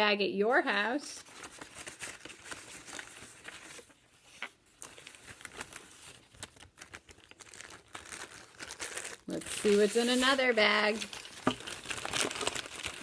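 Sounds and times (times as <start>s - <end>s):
bags crinkling and rustling: 0.7s - 13.0s.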